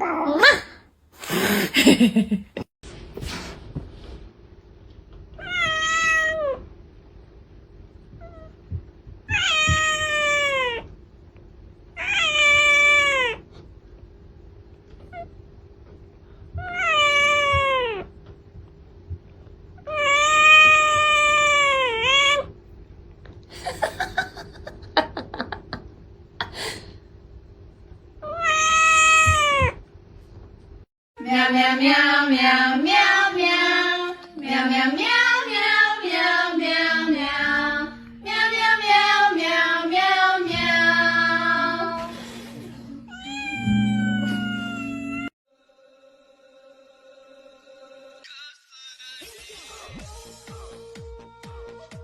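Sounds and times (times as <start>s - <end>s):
cat meowing: 5.4s - 6.6s, 9.3s - 10.9s, 12.0s - 13.4s, 16.6s - 18.1s, 19.8s - 22.5s, 28.2s - 29.8s, 43.1s - 45.3s.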